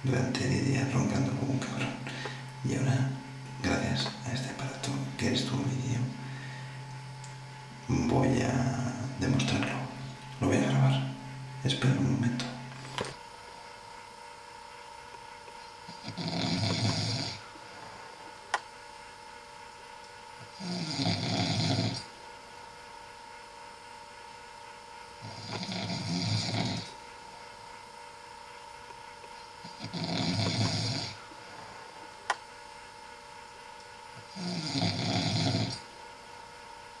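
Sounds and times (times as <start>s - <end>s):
faint steady hum: 0.0s - 37.0s
man snoring: 0.1s - 6.8s, 15.9s - 17.5s, 20.5s - 22.1s, 25.2s - 27.0s, 29.6s - 31.2s, 34.2s - 35.9s.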